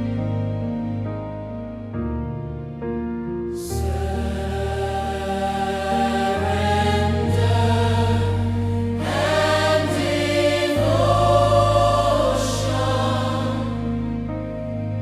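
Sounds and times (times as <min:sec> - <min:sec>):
sustained bass and chords: 0:00.0 - 0:15.0
choir singing gospel music: 0:03.6 - 0:15.0.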